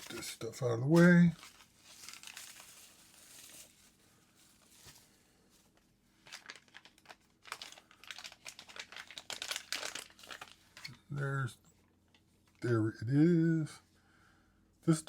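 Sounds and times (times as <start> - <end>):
packaging crinkling and rustling: 0.0 - 11.0.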